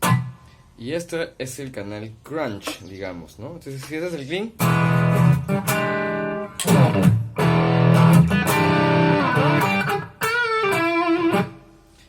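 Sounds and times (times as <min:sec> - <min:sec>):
electric guitar chords strummed: 0:00.0 - 0:00.5, 0:04.6 - 0:11.8.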